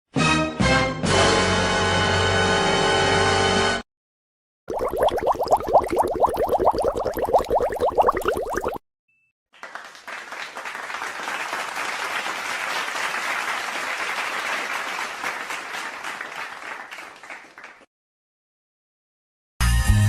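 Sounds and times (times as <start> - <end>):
crowd applauding: 9.6 - 17.9.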